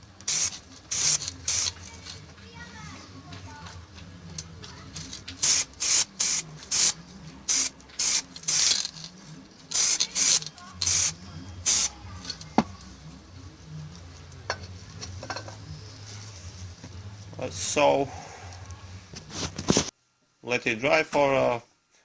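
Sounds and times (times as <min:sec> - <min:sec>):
spray paint can hissing: 0:00.2 - 0:02.2, 0:05.1 - 0:09.0, 0:09.7 - 0:12.0.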